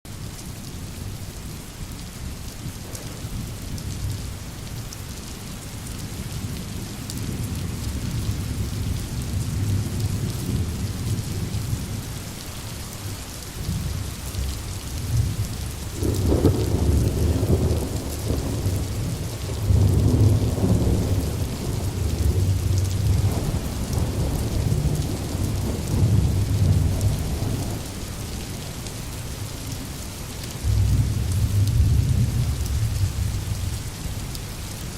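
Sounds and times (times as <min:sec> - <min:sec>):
steady rain: 0:00.1 - 0:34.9
rolling thunder: 0:02.7 - 0:04.3, 0:13.6 - 0:28.6, 0:30.6 - 0:33.8.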